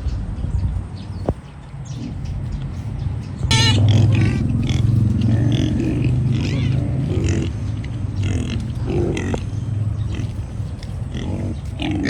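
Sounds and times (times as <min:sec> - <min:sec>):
steady low hum: 0:00.0 - 0:12.0
pig squealing: 0:03.5 - 0:07.5
pigs grunting: 0:03.5 - 0:12.0.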